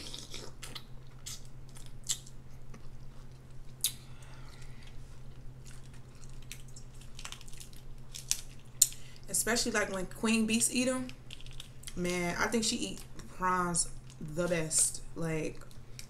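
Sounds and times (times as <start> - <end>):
chewing with wet mouth clicks: 0.0 - 9.0, 11.2 - 12.0
steady low hum: 0.0 - 16.0.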